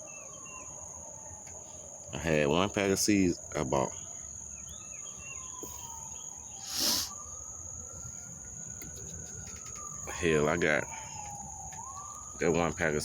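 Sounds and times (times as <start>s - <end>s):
faint siren wailing: 0.0s - 13.0s
insects chirring: 0.0s - 13.0s
bird chirps: 3.8s - 7.5s.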